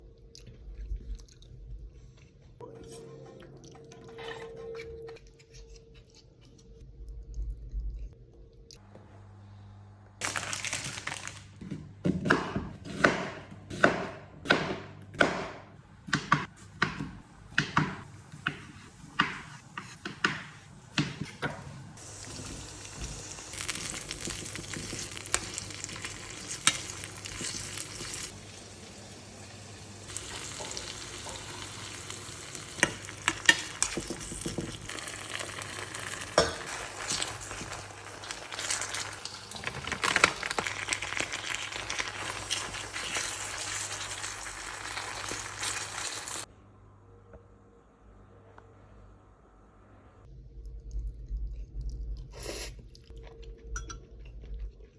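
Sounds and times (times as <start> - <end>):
food sizzling in a frying pan: 22.0 - 46.5.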